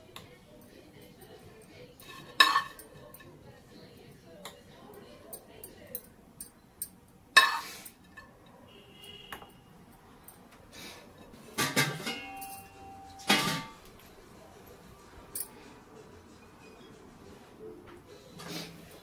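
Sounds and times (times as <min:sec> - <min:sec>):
kitchen utensils clinking: 0:00.9 - 0:03.4, 0:04.5 - 0:10.5, 0:11.1 - 0:14.2.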